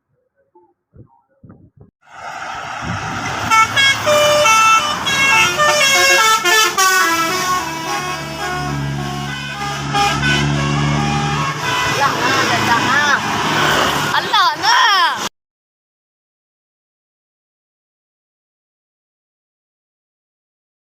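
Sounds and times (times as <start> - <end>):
bus engine hum: 0.0 - 15.3
bus horn playing a tune: 3.2 - 13.2.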